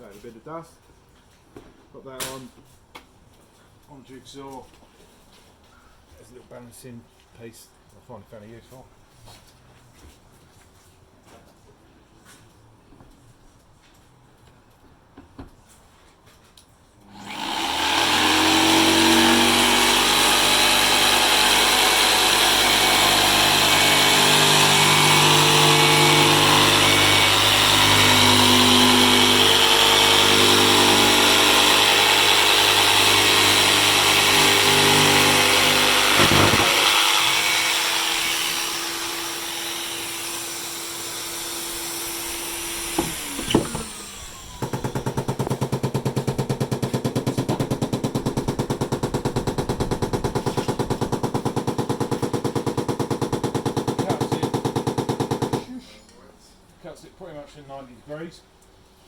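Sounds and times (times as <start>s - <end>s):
dust extractor motor hum: 17.1s - 49.6s
jigsaw cutting insulation board: 17.1s - 55.7s
knock: 43.0s - 43.9s.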